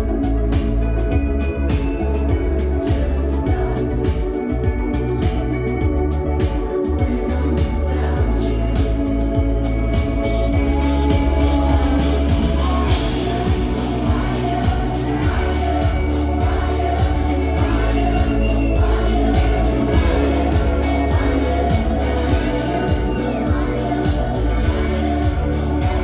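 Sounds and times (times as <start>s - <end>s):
heavy bass: 0.0s - 26.0s
synth organ chords: 0.0s - 26.0s
person singing: 7.0s - 26.0s
drum beat: 8.8s - 26.0s.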